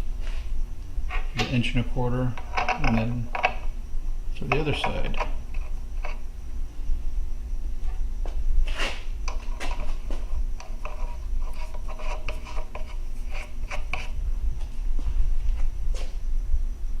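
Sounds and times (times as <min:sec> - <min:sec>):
steady low hum: 0:00.0 - 0:17.0
metal rubbing: 0:08.7 - 0:15.8.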